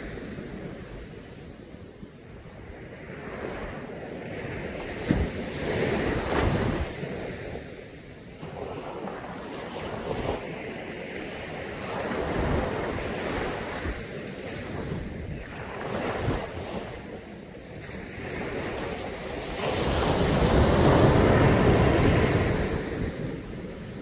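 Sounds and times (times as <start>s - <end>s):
wind gusting on microphone: 0.0s - 7.8s, 8.4s - 24.0s
surf breaking on a beach: 0.0s - 24.0s.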